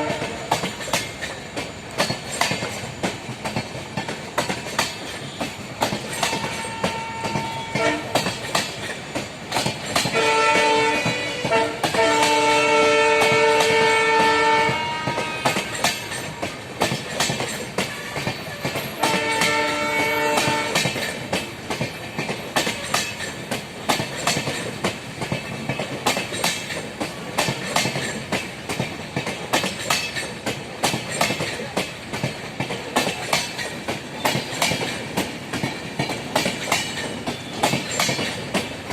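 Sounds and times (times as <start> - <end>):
locomotive air horn blasts: 0.0 - 0.5, 6.5 - 8.2, 10.1 - 15.9, 19.0 - 20.9
wheels clattering over rail joints: 0.0 - 14.6, 15.2 - 38.9.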